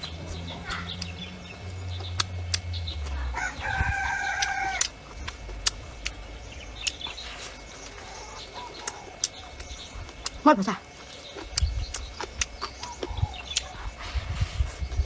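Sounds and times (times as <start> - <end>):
rooster crowing: 2.7 - 5.0
sharp clicks: 6.8 - 7.2.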